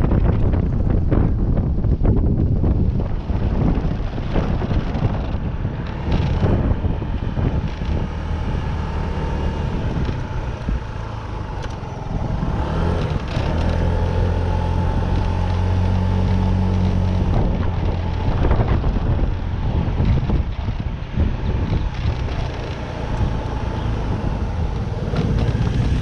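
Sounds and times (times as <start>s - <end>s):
rushing background noise: 0.0s - 26.0s
vehicle engine humming: 0.0s - 26.0s.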